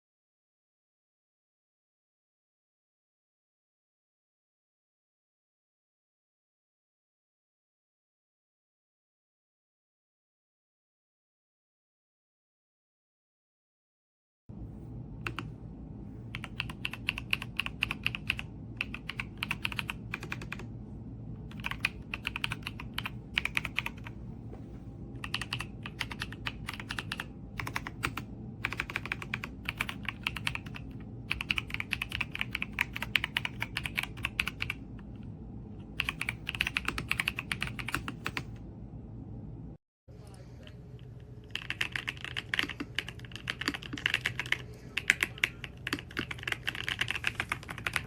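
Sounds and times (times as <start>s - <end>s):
steady low hum: 14.5s - 48.0s
mechanical keyboard clicks: 15.3s - 15.5s, 16.4s - 20.6s, 21.5s - 24.1s, 25.2s - 34.8s, 41.5s - 48.0s.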